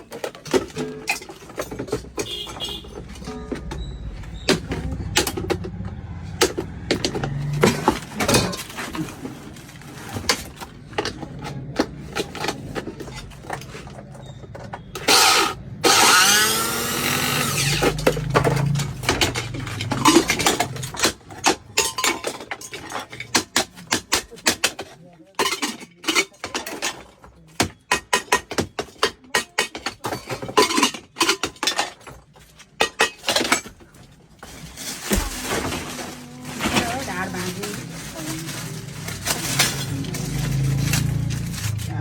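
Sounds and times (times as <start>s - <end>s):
knocks and clicks: 0.0s - 34.2s
power tool running in bursts: 15.1s - 17.8s.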